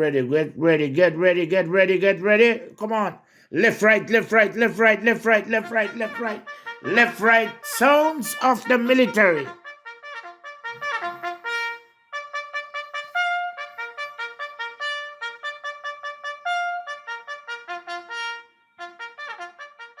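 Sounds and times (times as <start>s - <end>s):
trumpet bugle call: 4.8s - 20.0s.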